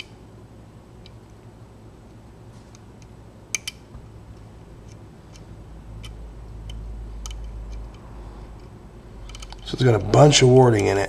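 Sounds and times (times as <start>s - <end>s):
lock pick metallic clicks: 3.5s - 3.9s.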